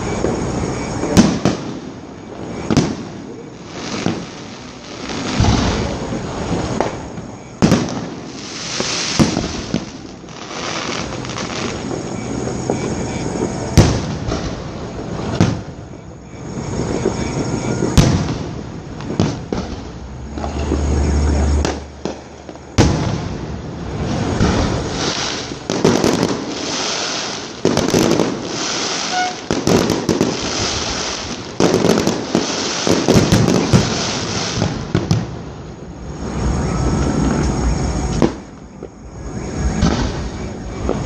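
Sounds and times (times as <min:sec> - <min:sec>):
fireworks bangs: 0:00.0 - 0:41.0
fireworks crackling: 0:00.0 - 0:41.0
low rumble: 0:16.4 - 0:25.7.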